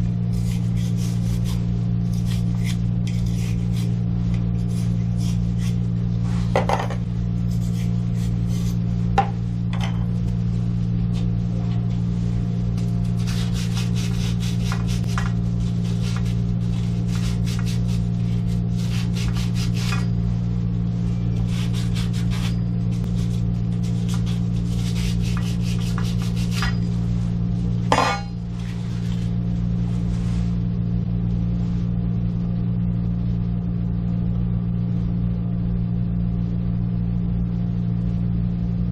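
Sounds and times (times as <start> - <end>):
steady low hum: 0.0 - 38.9.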